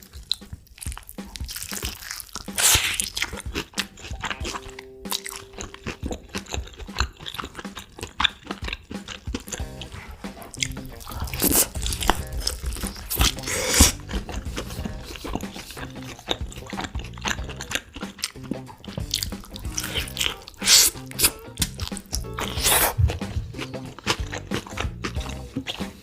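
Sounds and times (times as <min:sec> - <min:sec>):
crunchy chewing of chicken: 0:00.0 - 0:26.0
background music with bass line: 0:08.4 - 0:26.0.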